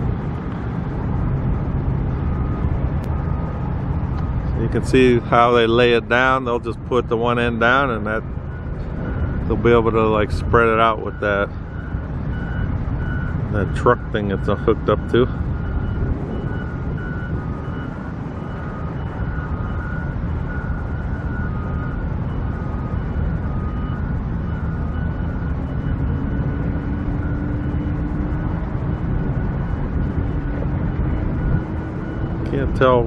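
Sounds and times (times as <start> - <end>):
low engine hum rising in pitch: 0.0 - 33.0
rumble of vehicles and machinery: 0.0 - 33.0
faint repeated beeping: 7.3 - 33.0.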